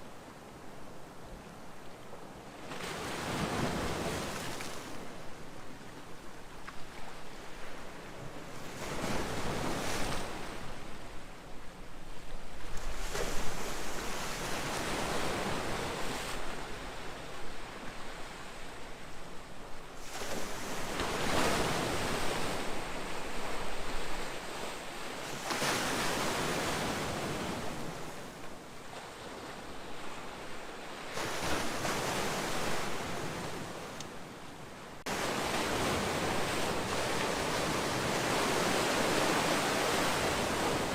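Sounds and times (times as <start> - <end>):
ocean waves breaking: 20.0 - 34.4, 35.0 - 40.9.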